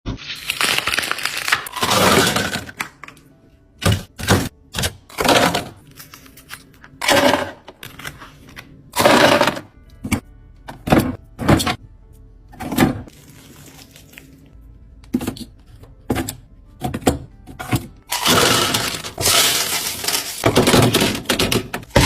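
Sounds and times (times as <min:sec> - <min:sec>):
ice cubes clattering: 0:18.1 - 0:22.0.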